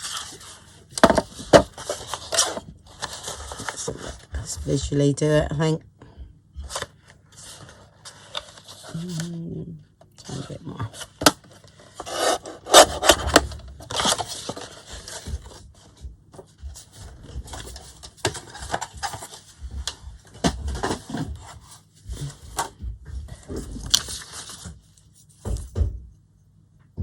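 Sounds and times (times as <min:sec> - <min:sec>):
card scraping and rubbing: 0:11.0 - 0:15.3.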